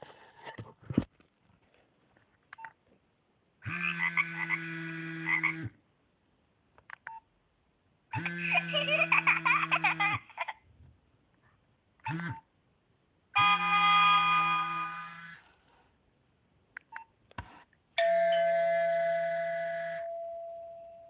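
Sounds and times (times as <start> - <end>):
short clicks: 6.8 - 7.2
mobile phone ringing: 18.0 - 21.0.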